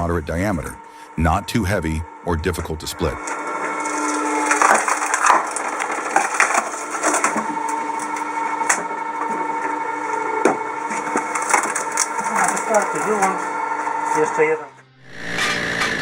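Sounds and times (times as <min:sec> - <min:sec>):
logs cracking and splintering: 0:02.5 - 0:14.2
wood splitter motor hum: 0:03.0 - 0:16.0.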